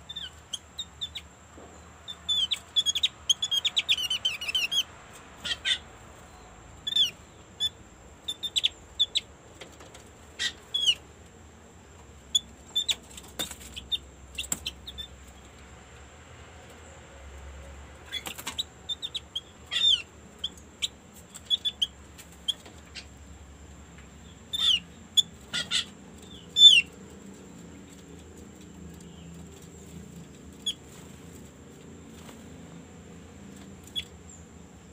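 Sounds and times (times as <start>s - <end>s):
bird chirping: 0.0s - 11.1s, 12.2s - 15.6s, 17.6s - 31.5s, 33.5s - 34.9s.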